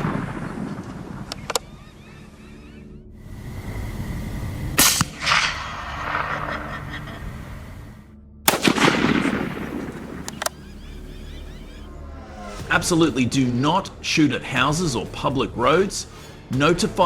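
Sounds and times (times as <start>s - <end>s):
gunshots: 4.8s - 6.6s, 8.5s - 10.6s
faint sharp cracks: 8.5s - 10.6s.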